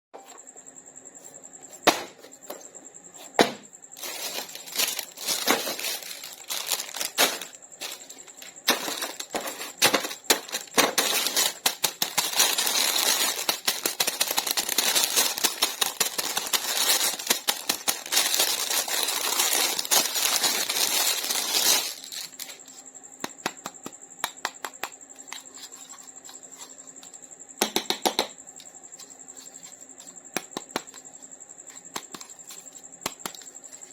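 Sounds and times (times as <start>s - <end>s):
plastic packaging crinkling: 4.0s - 22.6s.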